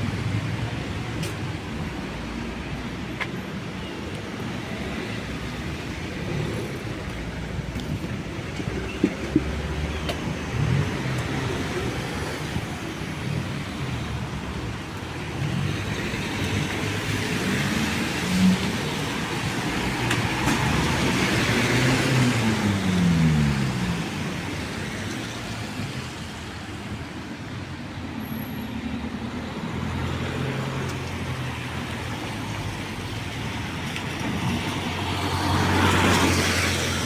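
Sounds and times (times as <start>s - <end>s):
cars passing on street: 0.0s - 37.0s.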